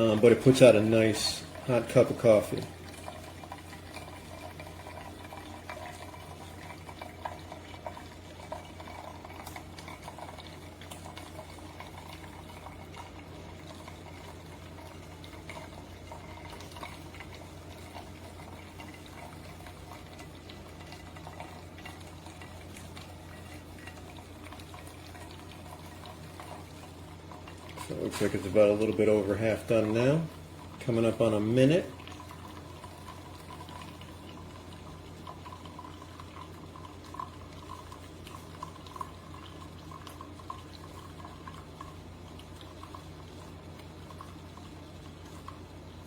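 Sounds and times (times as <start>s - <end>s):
coffee maker humming: 0.0s - 46.0s
coffee streaming into mug: 0.0s - 46.0s.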